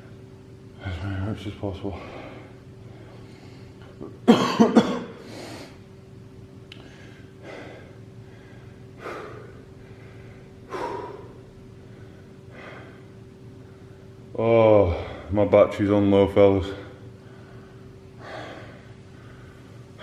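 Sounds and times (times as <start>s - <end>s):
man breathing hard: 1.9s - 3.9s, 5.1s - 5.9s, 6.8s - 14.2s, 16.8s - 20.0s
man coughing: 4.0s - 5.2s.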